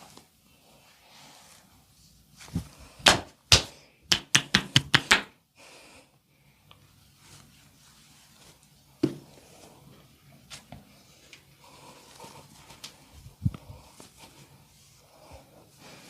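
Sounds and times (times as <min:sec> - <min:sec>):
hand slaps on body: 0:03.0 - 0:05.3.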